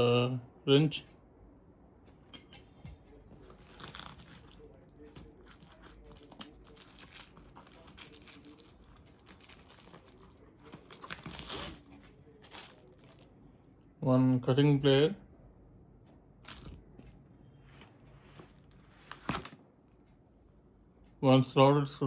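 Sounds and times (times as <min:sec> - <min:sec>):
packaging rustling and crinkling: 0:03.5 - 0:13.3, 0:16.5 - 0:16.8, 0:18.4 - 0:19.6.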